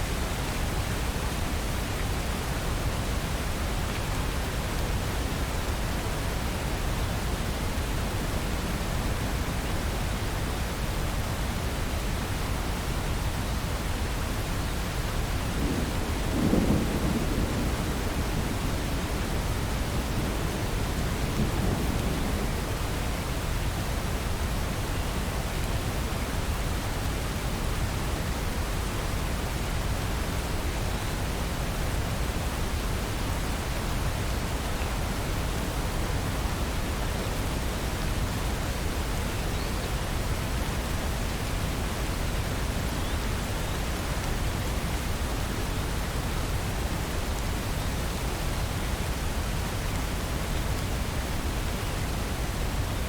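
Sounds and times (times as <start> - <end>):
steady rain hiss: 0.0 - 53.0
thunder rumble: 15.6 - 22.8.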